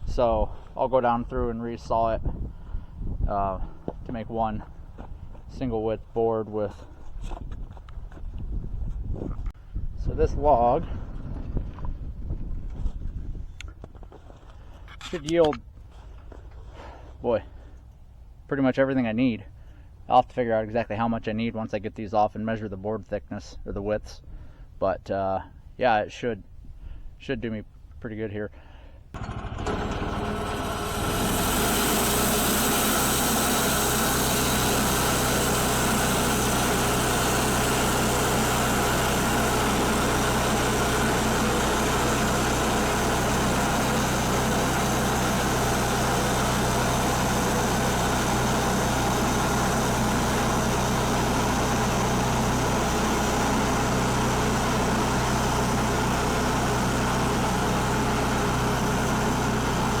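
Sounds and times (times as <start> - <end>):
sawmill engine running under load: 0.0 - 6.7, 29.2 - 60.0
saw cutting wood: 29.2 - 60.0.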